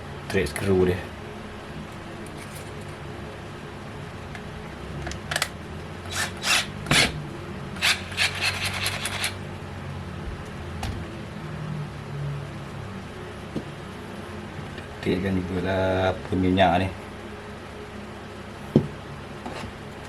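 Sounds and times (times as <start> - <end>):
faint steady hum: 0.0 - 20.0
thread tap scraping in metal: 7.8 - 9.4.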